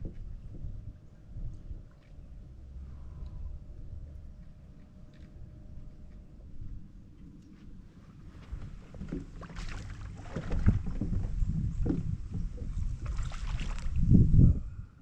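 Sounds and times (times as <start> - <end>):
water splashing and sloshing: 0.0 - 3.4, 7.2 - 14.3
low rumble: 0.0 - 7.4.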